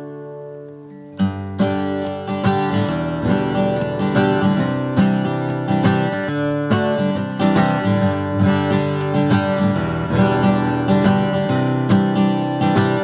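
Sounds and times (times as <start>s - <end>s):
acoustic guitar strummed: 0.0s - 13.0s.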